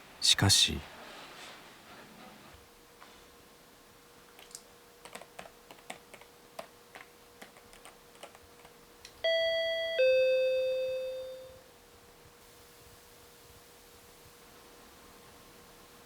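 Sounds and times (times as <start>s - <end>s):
electronic door chime: 9.2s - 11.6s.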